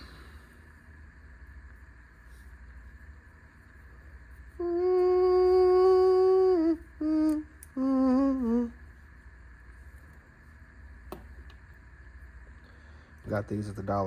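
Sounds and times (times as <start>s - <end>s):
person humming a tune: 4.6s - 8.8s.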